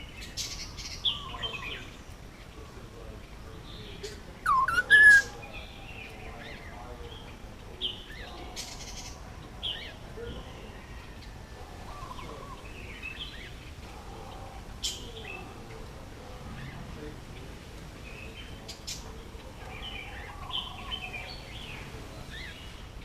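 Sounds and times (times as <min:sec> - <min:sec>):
parakeet squawking and chirping: 0:04.4 - 0:05.3.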